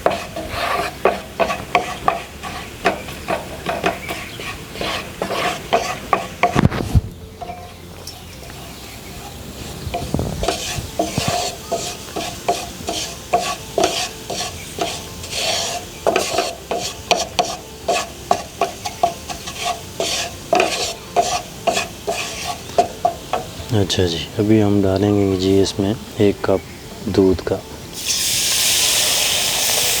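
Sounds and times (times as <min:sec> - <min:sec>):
utensil scraping a pan: 0:00.0 - 0:23.6
light sizzle: 0:00.0 - 0:30.0.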